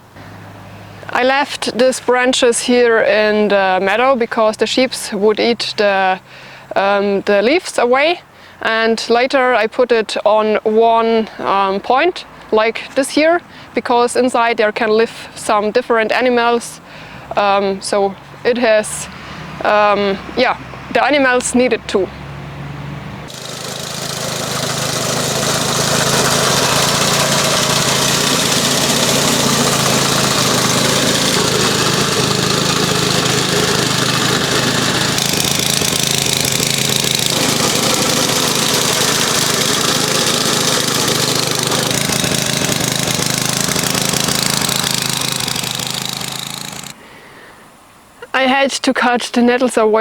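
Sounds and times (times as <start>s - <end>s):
petrol mower engine running: 23.3s - 47.0s.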